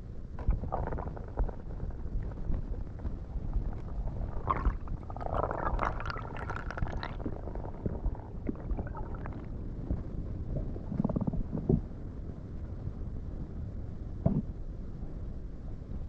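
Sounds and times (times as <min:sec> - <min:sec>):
underwater rumble: 0:00.0 - 0:16.0
gurgling bubbles: 0:00.4 - 0:11.9.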